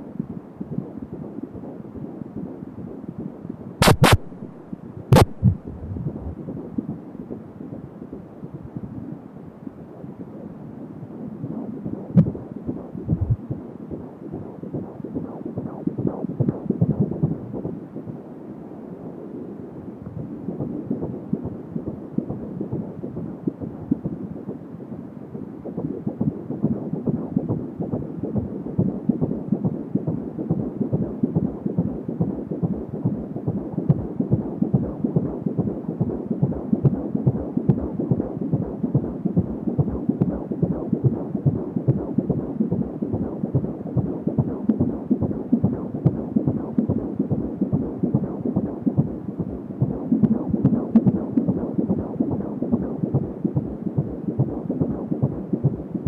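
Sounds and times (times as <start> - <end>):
fetal heartbeat on doppler: 0.2 - 4.4, 5.0 - 7.9, 11.4 - 18.3, 20.0 - 56.0.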